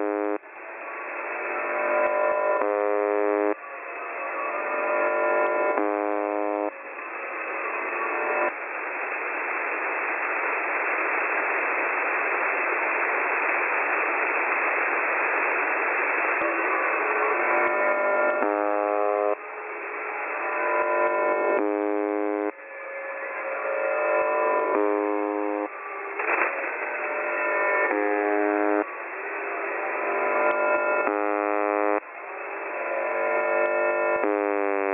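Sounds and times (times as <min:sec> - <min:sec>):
radio static: 0:00.0 - 0:03.6, 0:04.5 - 0:06.8, 0:07.4 - 0:22.6, 0:23.3 - 0:34.9
harsh radio buzz tone: 0:00.0 - 0:06.8, 0:07.4 - 0:08.6, 0:16.2 - 0:34.9.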